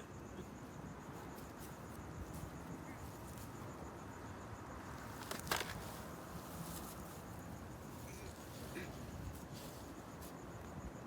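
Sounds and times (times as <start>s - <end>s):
faint crickets chirping: 0.0s - 11.0s.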